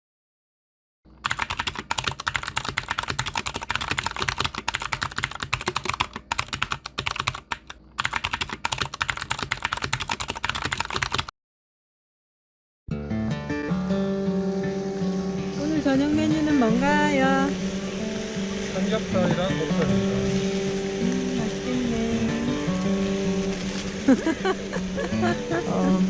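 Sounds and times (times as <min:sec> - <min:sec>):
computer keyboard typing: 0:01.2 - 0:11.3.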